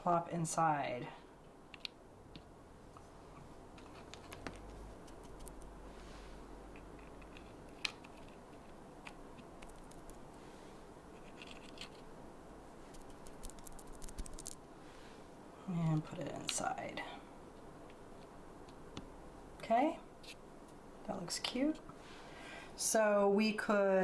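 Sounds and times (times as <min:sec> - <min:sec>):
wooden panels clicking and scraping: 0:11.1 - 0:12.1.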